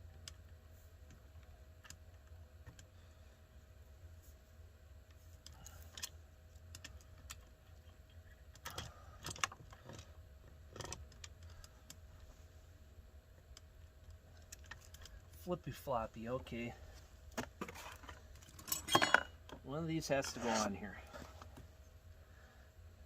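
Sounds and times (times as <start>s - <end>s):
low steady hum: 0.0s - 23.0s
metal parts clicking and clinking: 17.8s - 19.3s.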